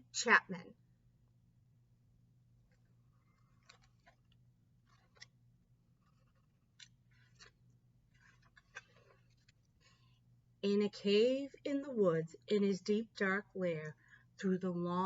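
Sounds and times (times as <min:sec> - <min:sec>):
faint rustles and ticks: 0:02.6 - 0:10.2.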